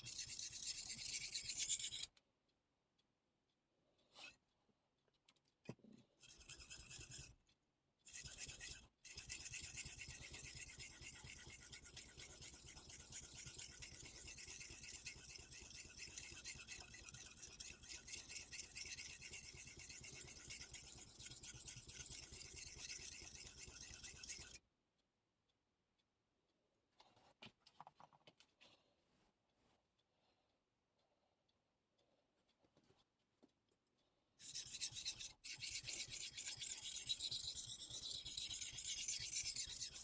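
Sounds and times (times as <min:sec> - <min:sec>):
knife scraping on whetstone: 0:08.1 - 0:24.6, 0:34.4 - 0:40.0.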